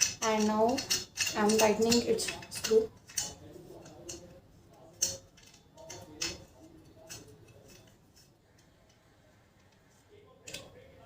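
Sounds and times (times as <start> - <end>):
screw being tightened clicks: 0.0 - 4.3, 5.0 - 8.7.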